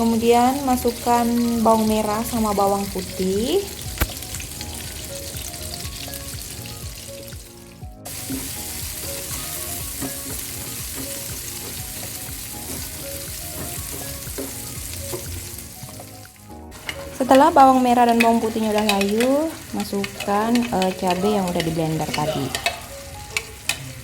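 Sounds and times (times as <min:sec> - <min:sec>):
hot oil sizzling in pan: 0:00.0 - 0:24.0
stirring clicks: 0:09.9 - 0:24.0.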